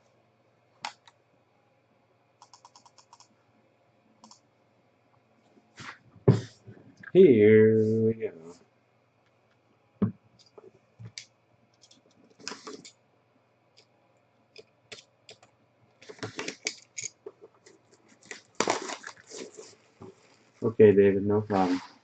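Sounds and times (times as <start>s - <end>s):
packaging rustling: 16.1s - 20.6s.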